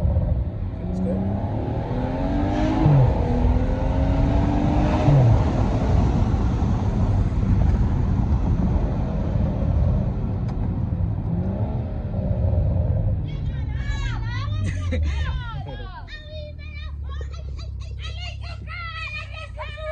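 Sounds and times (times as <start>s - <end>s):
car engine revving through gears: 0.0s - 13.3s.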